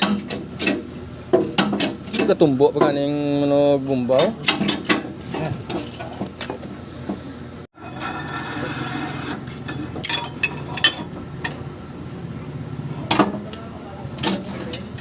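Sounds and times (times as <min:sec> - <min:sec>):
metal tools clanking: 0:00.0 - 0:03.1, 0:04.1 - 0:06.3, 0:09.5 - 0:11.7.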